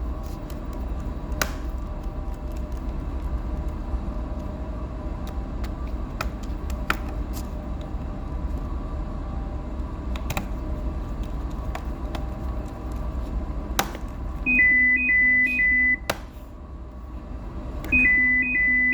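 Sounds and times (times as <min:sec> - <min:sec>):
steady low hum: 0:00.0 - 0:18.9
electronic beeping tune: 0:14.5 - 0:16.1, 0:17.9 - 0:18.9.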